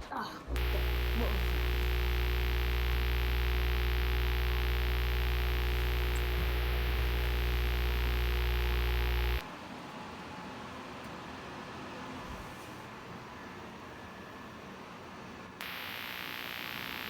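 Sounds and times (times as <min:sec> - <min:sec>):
electronic hum and hiss drone: 0:00.6 - 0:09.5, 0:15.6 - 0:17.0.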